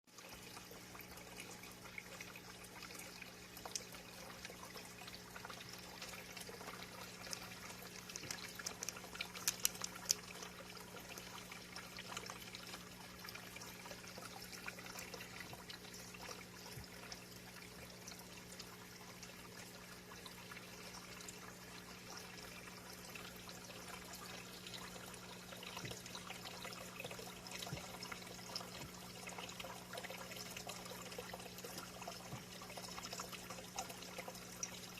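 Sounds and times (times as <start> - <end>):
water trickling: 0.1 - 34.9
light clicks: 7.2 - 10.3.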